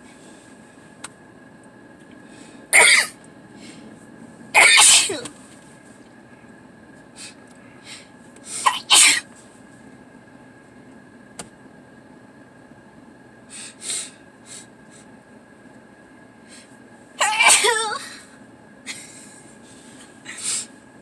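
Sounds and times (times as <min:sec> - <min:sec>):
person sneezing loudly: 0:02.8 - 0:03.2, 0:04.6 - 0:05.3, 0:08.6 - 0:09.2, 0:17.2 - 0:18.2.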